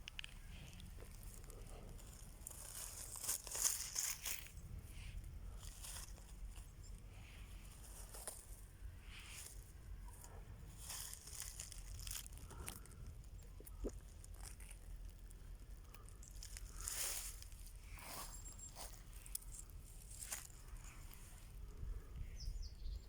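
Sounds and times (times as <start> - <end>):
rustling and crunching leaves: 0.0 - 21.9
wind rumble on microphone: 19.8 - 23.0.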